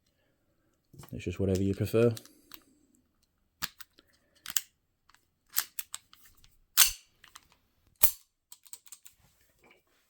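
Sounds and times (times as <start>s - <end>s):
air pistol parts clicking: 3.6s - 9.1s.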